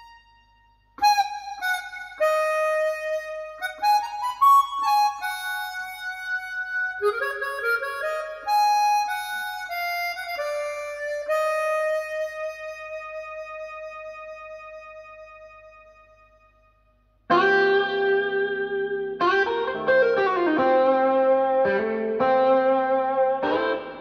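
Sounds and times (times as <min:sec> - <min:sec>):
instrumental music through speaker: 0:00.0 - 0:24.0.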